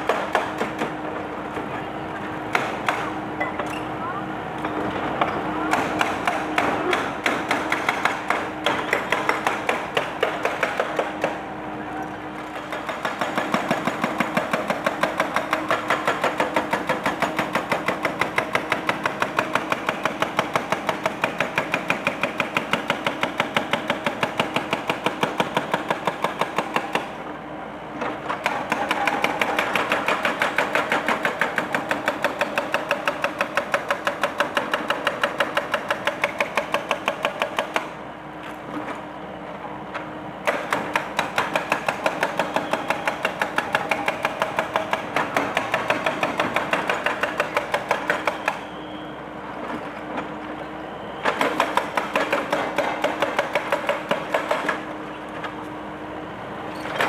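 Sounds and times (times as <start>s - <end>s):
hydraulic breaker hammering concrete: 0.0s - 1.0s, 5.6s - 11.4s, 12.5s - 27.1s, 28.3s - 38.0s, 40.4s - 48.7s, 51.2s - 55.0s.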